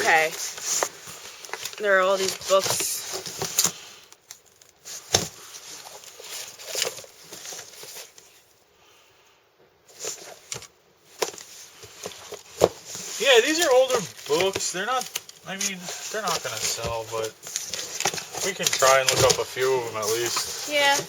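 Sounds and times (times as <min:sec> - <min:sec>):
rustling: 0:00.0 - 0:08.6, 0:09.9 - 0:21.0
books and boxes knocking: 0:02.2 - 0:03.6, 0:11.2 - 0:21.0.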